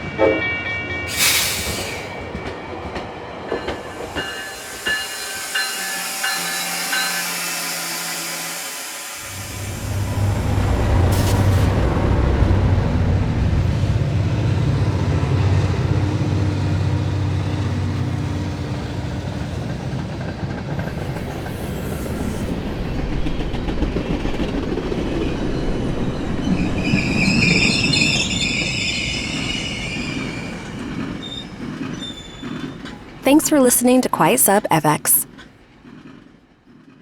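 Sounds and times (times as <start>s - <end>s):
rail wheel squeal: 0.0s - 10.4s, 25.1s - 33.0s
train rumbling on rails: 0.0s - 32.8s.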